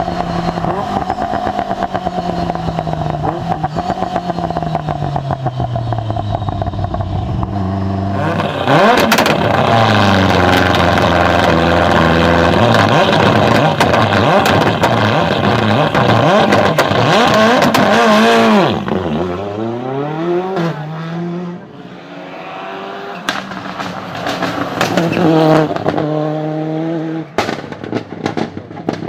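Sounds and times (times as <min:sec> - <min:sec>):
car engine revving hard: 0:00.0 - 0:28.5
exhaust pops and crackles: 0:08.3 - 0:19.1, 0:23.3 - 0:26.0, 0:27.4 - 0:29.0.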